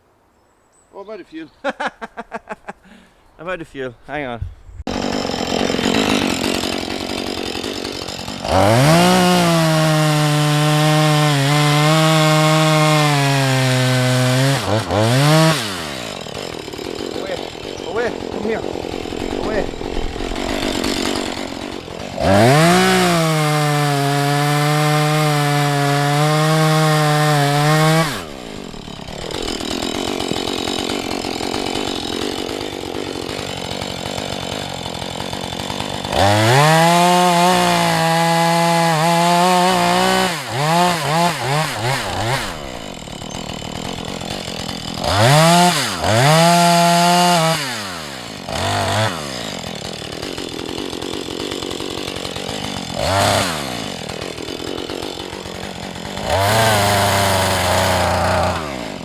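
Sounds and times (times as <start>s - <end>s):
chainsaw revving and idling: 4.8s - 59.0s.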